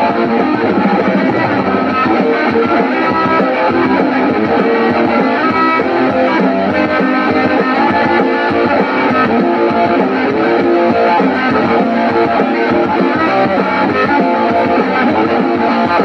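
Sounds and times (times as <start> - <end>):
guitar strumming: 0.0 - 16.0.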